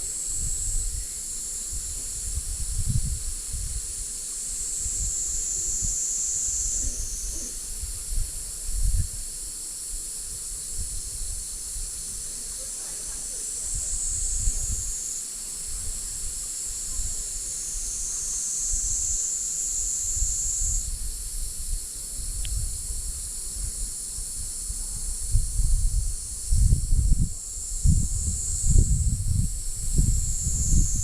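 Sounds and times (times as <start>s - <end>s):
wind rumble on microphone: 0.0s - 15.0s, 15.6s - 19.2s, 19.9s - 31.0s
insect chorus: 0.0s - 31.0s.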